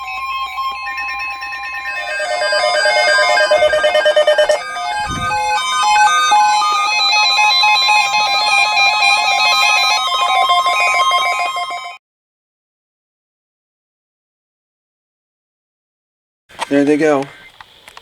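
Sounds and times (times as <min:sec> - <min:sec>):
electronic music with high notes: 0:00.0 - 0:12.0.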